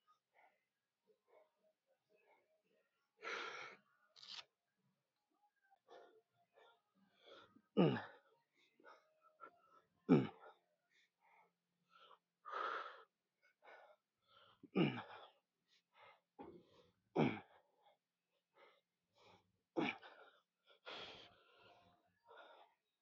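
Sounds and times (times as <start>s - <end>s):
man breathing hard: 5.9s - 22.9s
man grunting with exertion: 7.8s - 8.2s, 14.7s - 15.1s, 17.2s - 17.5s.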